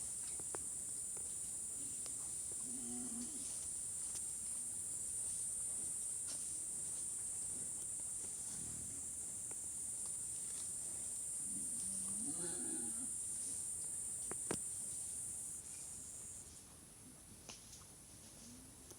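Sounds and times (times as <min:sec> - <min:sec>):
insect chirring: 0:00.0 - 0:16.4
low animal grunt: 0:11.5 - 0:13.1.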